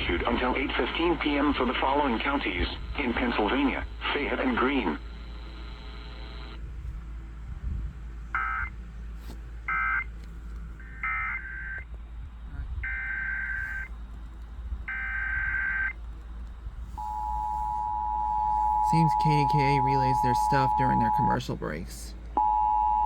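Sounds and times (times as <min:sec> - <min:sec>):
buzzy warbling data bursts: 0:10.8 - 0:11.9, 0:12.5 - 0:13.9, 0:14.9 - 0:16.0.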